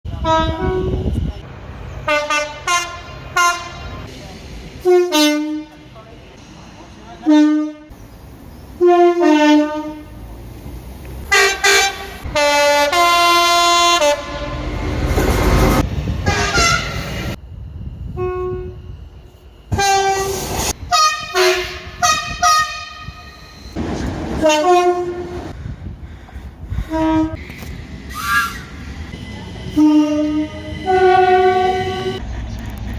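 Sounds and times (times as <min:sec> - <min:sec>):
train horn blasts: 0:00.1 - 0:01.3, 0:02.0 - 0:04.1, 0:04.8 - 0:05.9, 0:07.2 - 0:07.9, 0:08.8 - 0:10.2, 0:11.3 - 0:14.8, 0:16.2 - 0:17.1, 0:18.1 - 0:18.9, 0:19.7 - 0:23.6, 0:24.4 - 0:25.4, 0:26.9 - 0:27.4, 0:29.7 - 0:32.2
passing train rumble: 0:00.1 - 0:32.9.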